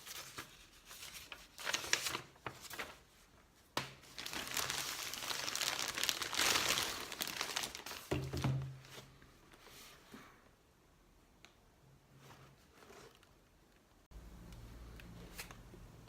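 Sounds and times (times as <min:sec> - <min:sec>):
packaging rustling and crinkling: 0:04.0 - 0:09.1.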